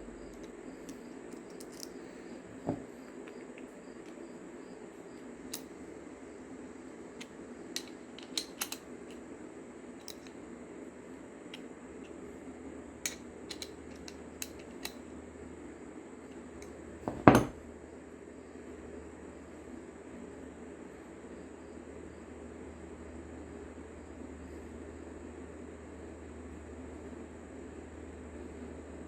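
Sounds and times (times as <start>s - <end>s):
small parts clicking: 0.3s - 2.0s, 7.2s - 9.2s, 10.0s - 10.4s, 13.1s - 15.0s.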